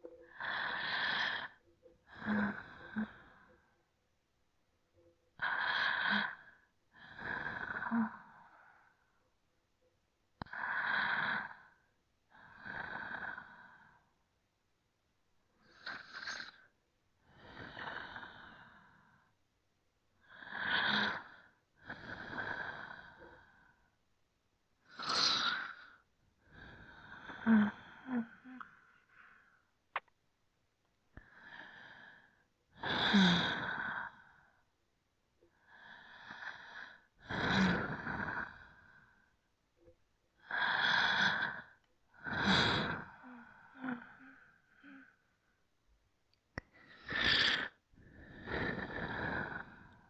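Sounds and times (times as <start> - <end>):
slow deep breathing: 40.4 - 45.7, 46.6 - 50.0.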